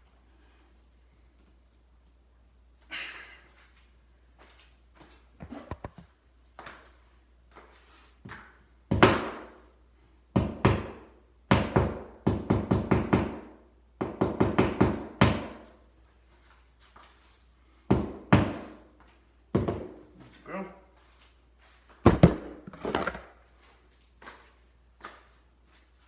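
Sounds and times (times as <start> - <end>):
hammer tapping wall anchors: 10.4 - 15.6.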